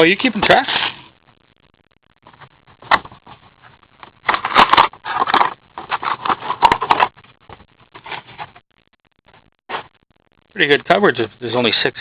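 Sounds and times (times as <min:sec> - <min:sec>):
packaging rustling and scraping: 0:02.3 - 0:08.6.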